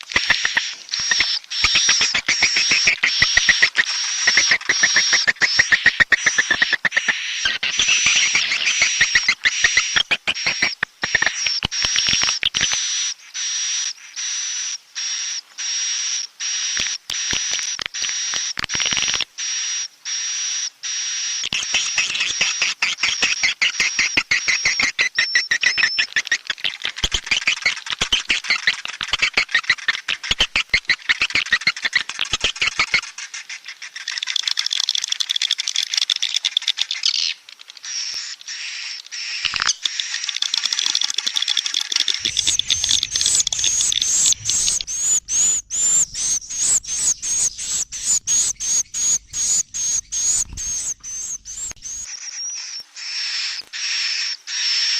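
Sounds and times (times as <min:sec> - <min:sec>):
swiftlets twittering: 0:00.0 - 0:11.6, 0:42.2 - 0:52.1
thin steady high tone: 0:42.2 - 0:52.1.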